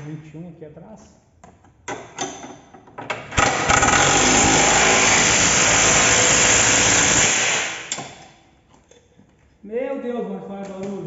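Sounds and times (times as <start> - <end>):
impact wrench hammering: 3.3 - 8.2.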